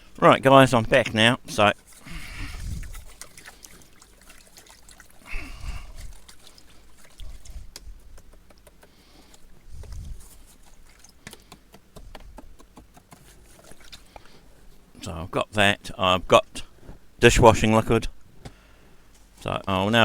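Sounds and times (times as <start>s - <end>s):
dull thumps: 7.2s - 14.4s
light clicks and taps: 7.7s - 10.0s.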